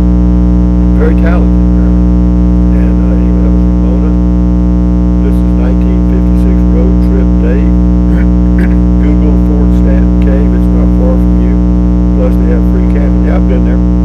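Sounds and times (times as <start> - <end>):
loud electrical buzz: 0.0 - 14.0
faint muffled voice: 1.0 - 2.0, 2.7 - 4.2, 5.2 - 11.6, 12.2 - 13.8.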